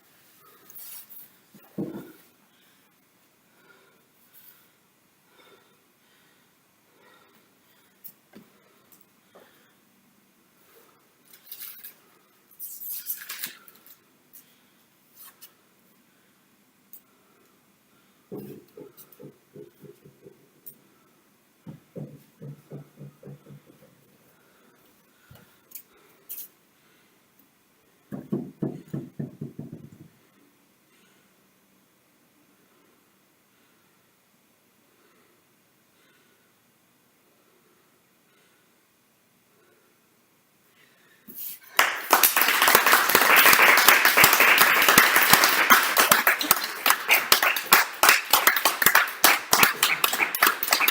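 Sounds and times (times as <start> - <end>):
applause: 41.7 - 50.9.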